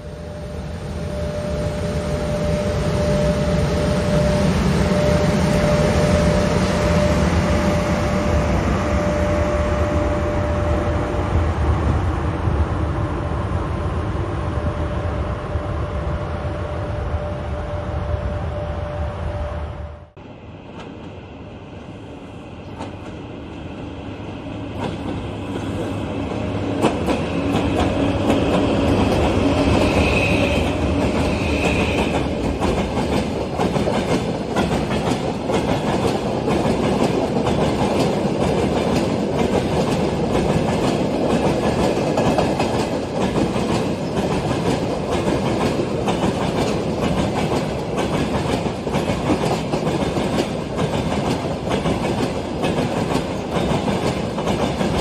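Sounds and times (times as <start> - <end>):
train wheels clattering over rails: 24.8 - 55.0.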